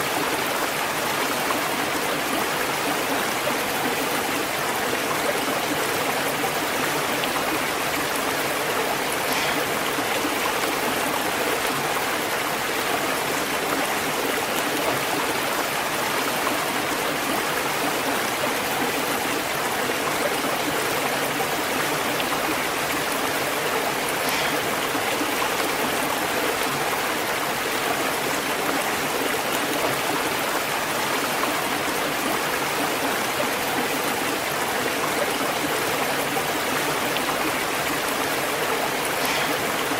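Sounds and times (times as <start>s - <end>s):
waterfall and rushing stream: 0.0s - 39.9s.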